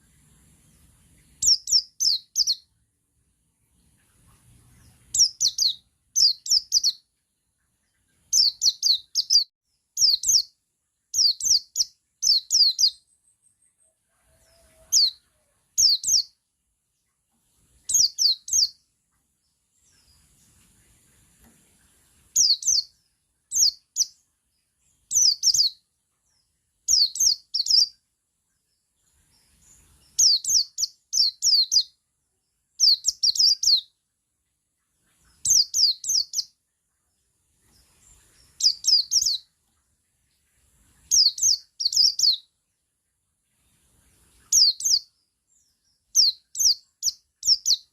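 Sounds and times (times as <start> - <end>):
bird singing high rapid notes: 1.2 - 2.8, 4.6 - 7.1, 8.2 - 13.6, 17.9 - 18.8, 22.3 - 24.2, 25.0 - 25.8, 26.9 - 28.0, 29.5 - 31.9, 32.8 - 33.9, 37.8 - 39.5, 41.0 - 42.5, 44.4 - 47.9.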